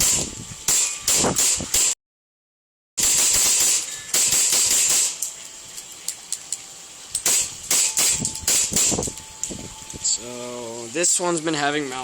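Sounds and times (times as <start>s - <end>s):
gas pistol sharp cracks: 3.0s - 5.4s, 7.1s - 9.2s.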